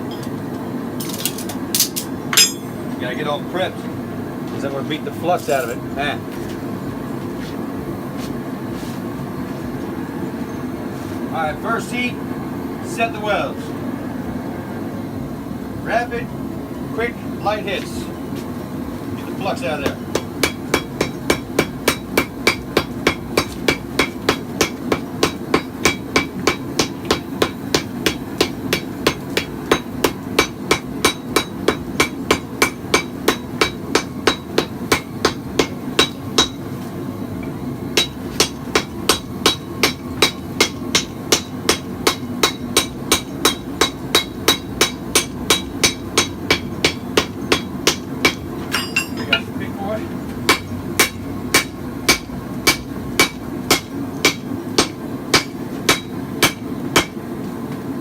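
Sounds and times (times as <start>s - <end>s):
steady low hum: 0.0s - 58.0s
hammer striking steel on anvil: 1.0s - 2.9s, 19.8s - 36.7s, 38.0s - 49.6s, 50.5s - 57.2s.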